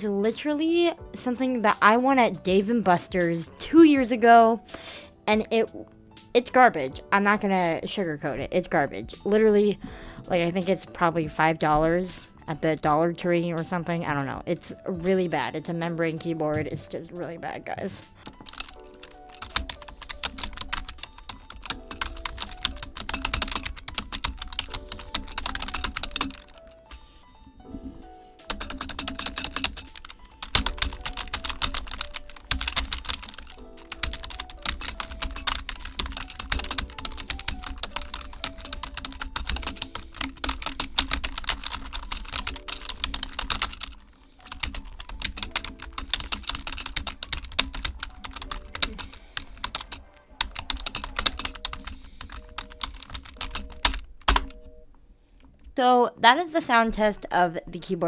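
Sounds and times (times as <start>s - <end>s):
background music: 0.0s - 58.0s
fast keyboard typing: 17.9s - 27.2s, 28.0s - 54.8s.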